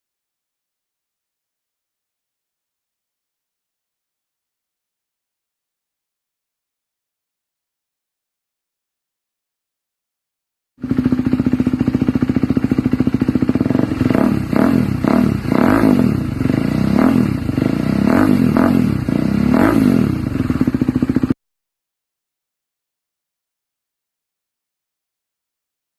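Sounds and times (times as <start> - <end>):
motorcycle engine idling and revving: 10.8 - 21.4.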